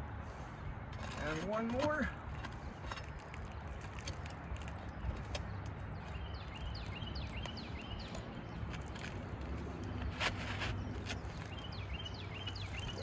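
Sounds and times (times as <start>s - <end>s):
bird chirping: 10.8s - 13.0s.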